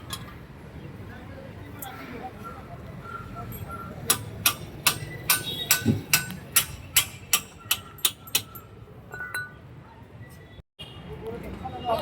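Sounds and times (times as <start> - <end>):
hammer striking metal: 4.1 - 8.7.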